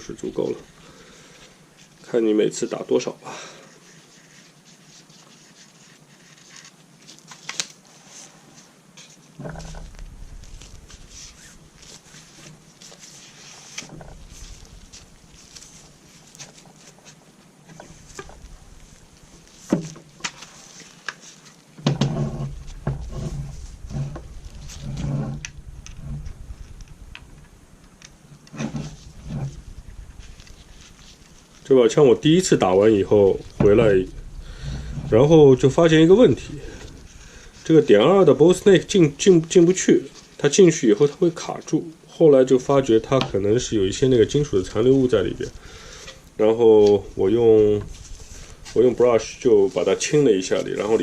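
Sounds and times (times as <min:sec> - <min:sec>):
scraping: 0:09.0 - 0:40.5, 0:42.6 - 0:51.0
low thumps: 0:09.4 - 0:11.9, 0:13.9 - 0:16.1, 0:17.7 - 0:20.0, 0:21.8 - 0:39.3, 0:42.9 - 0:50.0
cleaning cord rubbing in barrel: 0:13.2 - 0:17.2, 0:21.9 - 0:40.4.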